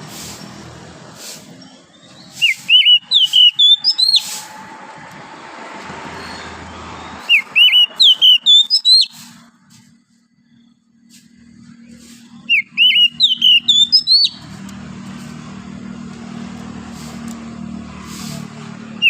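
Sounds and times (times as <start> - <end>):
bird singing whistled notes: 1.6 - 4.3, 6.2 - 9.4, 11.4 - 14.5.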